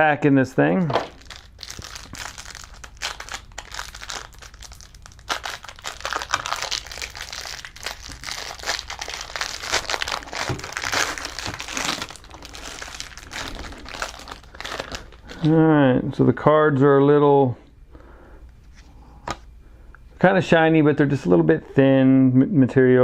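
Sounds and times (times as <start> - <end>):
wrapper tearing and crinkling: 0.9 - 15.6.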